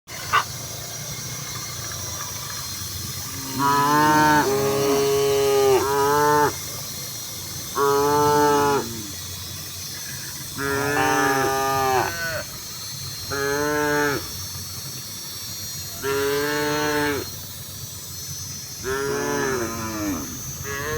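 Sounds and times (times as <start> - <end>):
cattle mooing: 3.3 - 6.6, 7.8 - 9.2, 10.6 - 12.5, 13.3 - 14.2, 16.0 - 17.3, 18.8 - 20.9.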